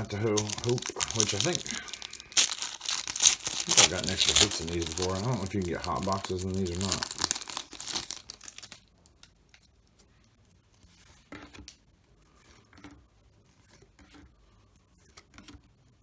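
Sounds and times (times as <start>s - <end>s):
cards rustling and tapping: 0.0s - 8.8s
wrapper tearing and crinkling: 0.0s - 8.8s.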